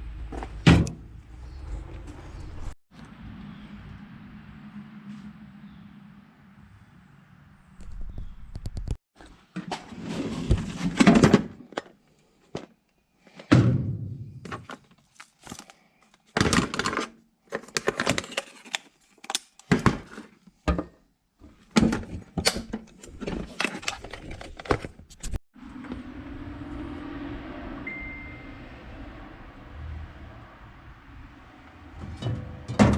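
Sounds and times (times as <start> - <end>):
steady low rumble: 0.0 - 8.6, 25.6 - 32.8.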